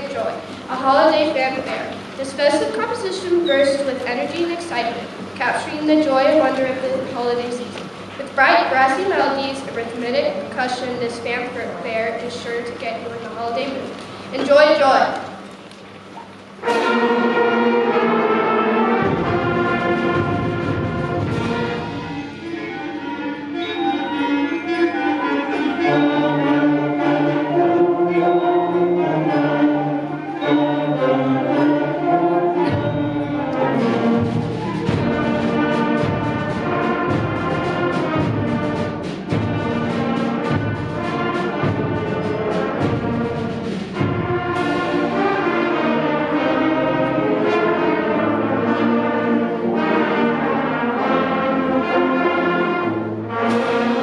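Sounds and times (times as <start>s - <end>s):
percussion rhythmic strikes: 0.0s - 54.0s
brass chords and melodies: 16.6s - 54.0s.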